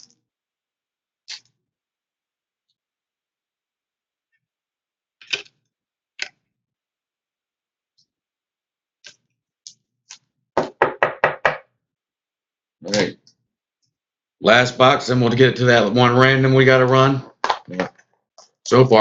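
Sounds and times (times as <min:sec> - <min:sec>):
sharp knocks: 0:10.6 - 0:11.7.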